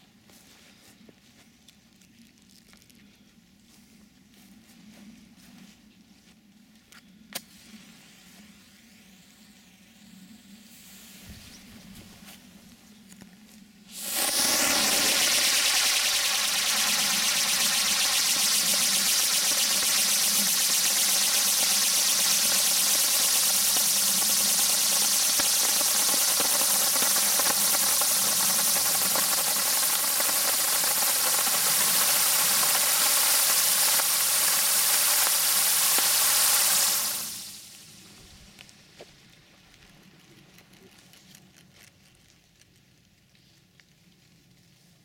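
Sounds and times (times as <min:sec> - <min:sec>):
firework spinner hissing: 0:07.4 - 0:12.5, 0:13.8 - 0:39.0
whining tone: 0:14.0 - 0:36.2.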